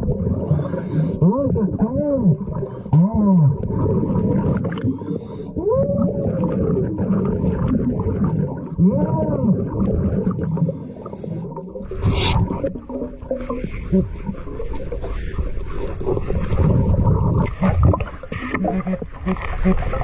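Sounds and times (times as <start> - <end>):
short hiss: 12.0 - 12.4.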